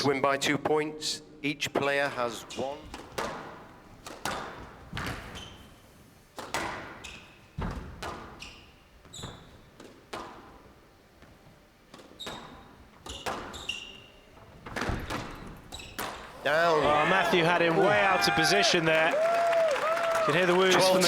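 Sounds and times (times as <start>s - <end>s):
shoes squeaking on floor: 2.3s - 17.4s
squash ball striking: 2.9s - 5.4s, 6.4s - 7.0s, 14.7s - 16.3s.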